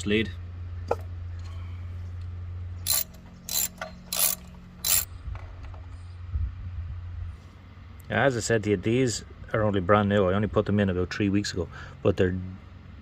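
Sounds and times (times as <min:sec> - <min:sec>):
steady low hum: 0:00.0 - 0:13.0
ratchet wrench clicking: 0:02.8 - 0:05.1.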